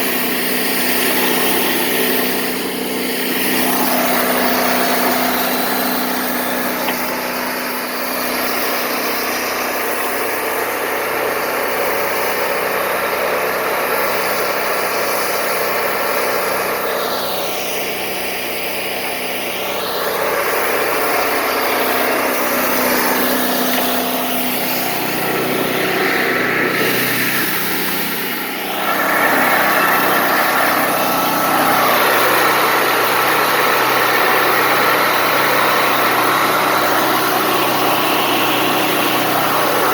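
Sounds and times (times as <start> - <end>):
bandsaw mill sawing boards: 0.0 - 39.9.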